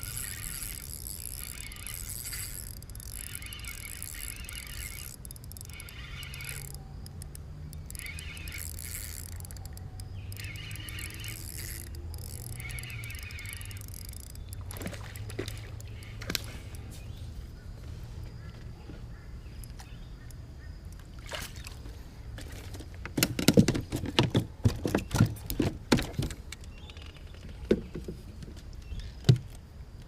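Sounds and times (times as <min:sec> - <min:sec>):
sharp clicks: 0:00.0 - 0:16.8
low rumble of wind: 0:00.0 - 0:30.0.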